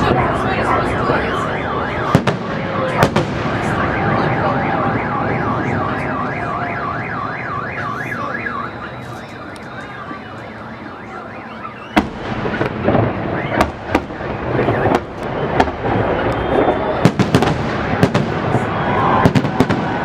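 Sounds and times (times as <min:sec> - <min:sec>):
firework bangs: 0:00.0 - 0:06.6, 0:11.6 - 0:20.0
car alarm wailing: 0:00.0 - 0:17.4.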